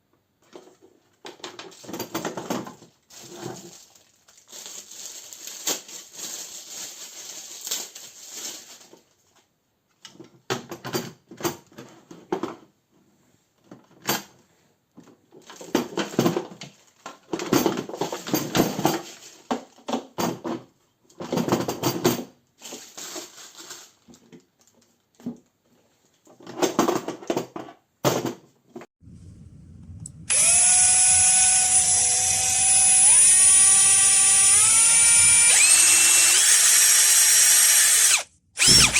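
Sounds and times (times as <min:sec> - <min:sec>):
cordless impact drill bursts: 0:30.3 - 0:38.9
drill motor whine: 0:30.3 - 0:38.9.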